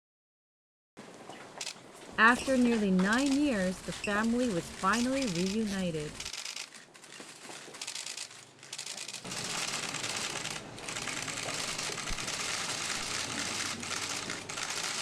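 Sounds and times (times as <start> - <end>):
crinkling rustling: 6.6 - 9.0.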